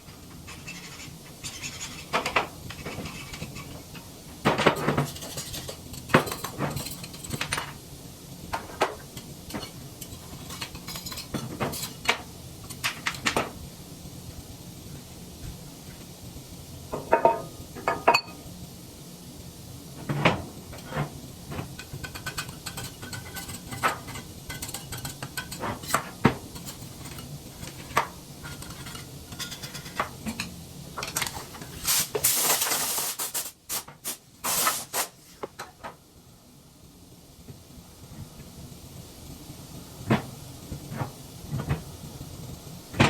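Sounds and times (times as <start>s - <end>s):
hissing bursts: 31.8s - 35.4s.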